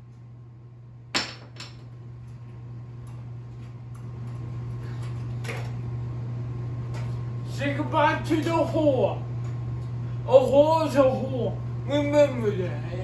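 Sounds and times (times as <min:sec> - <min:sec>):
ceiling fan motor humming: 0:00.0 - 0:13.0.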